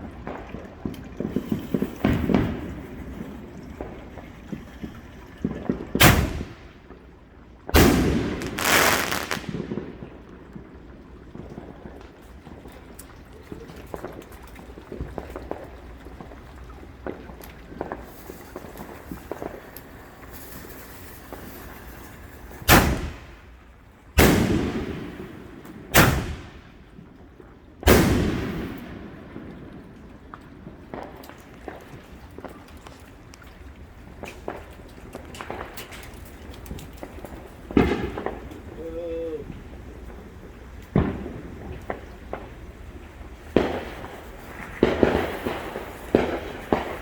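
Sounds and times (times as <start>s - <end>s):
small firework pops: 0.0s - 23.6s, 24.2s - 27.1s, 27.8s - 38.7s, 40.8s - 47.0s
loud firework bangs: 5.4s - 6.8s, 7.7s - 10.3s, 20.3s - 23.6s, 24.2s - 27.1s, 27.8s - 29.5s, 37.7s - 38.6s, 40.9s - 42.8s, 43.4s - 47.0s
firework hiss: 7.8s - 9.8s, 18.0s - 23.4s.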